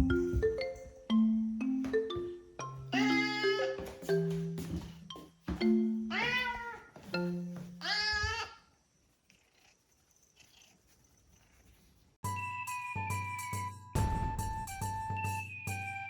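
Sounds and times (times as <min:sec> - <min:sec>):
light background music: 0:00.0 - 0:07.8, 0:12.2 - 0:16.0
cat meowing: 0:03.0 - 0:03.7, 0:06.1 - 0:06.9, 0:07.8 - 0:08.6.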